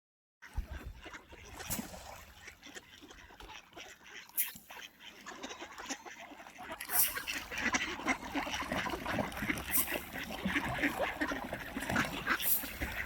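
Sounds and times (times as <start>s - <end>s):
ducks quacking: 0.4s - 13.0s.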